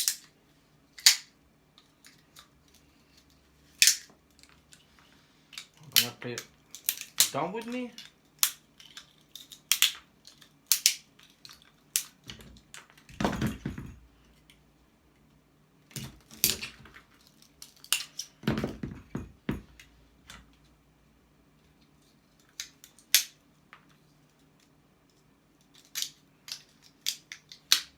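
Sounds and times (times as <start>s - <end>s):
metallic clicks and snips: 5.5s - 12.2s.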